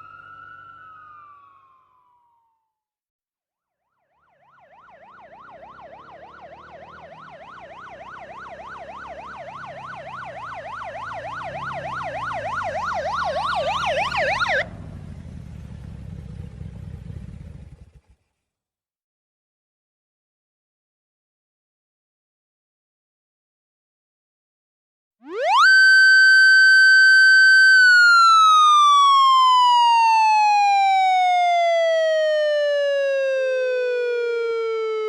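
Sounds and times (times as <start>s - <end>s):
motorcycle siren yelping: 0.0s - 2.5s, 4.0s - 18.0s, 25.2s - 35.0s
motorcycle engine rumbling: 5.5s - 18.3s.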